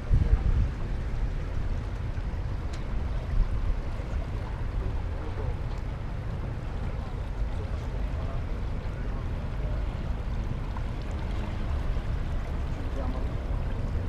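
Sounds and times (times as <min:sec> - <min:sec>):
wind noise: 0:00.0 - 0:05.4
boat engine rumble: 0:00.0 - 0:14.0
water noise: 0:00.0 - 0:14.0.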